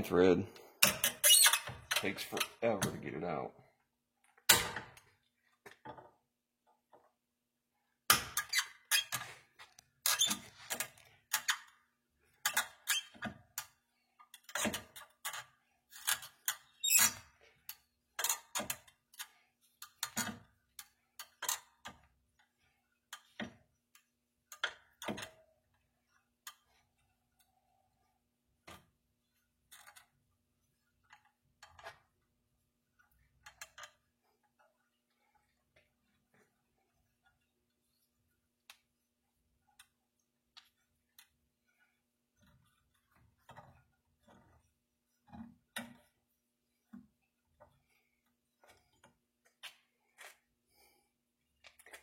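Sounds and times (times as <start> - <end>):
nut threads squeaking and clicking: 0.8 - 2.5, 8.4 - 11.8, 12.4 - 21.9.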